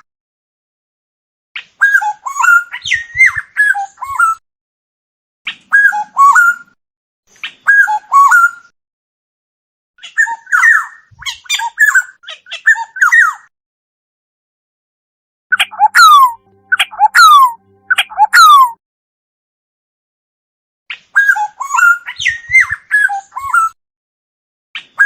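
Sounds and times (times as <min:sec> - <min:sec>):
oriole calling: 0:15.5 - 0:18.8.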